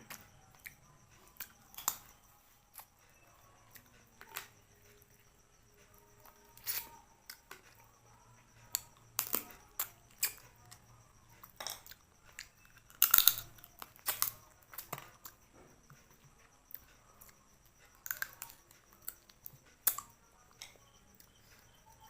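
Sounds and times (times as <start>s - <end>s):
person chewing and crunching food: 0.0s - 21.8s.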